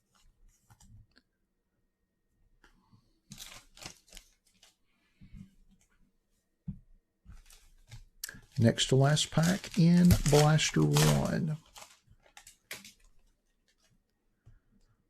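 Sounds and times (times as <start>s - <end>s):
foil wrapper tearing and crinkling: 3.3s - 4.8s, 8.7s - 13.1s.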